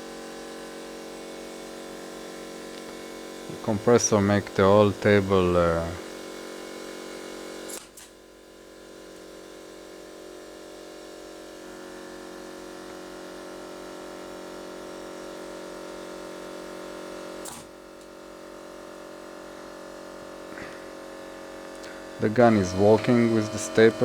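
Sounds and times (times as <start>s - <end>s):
air compressor humming: 0.0s - 24.0s
pneumatic stapler shots into wood: 7.7s - 8.2s, 17.4s - 17.8s.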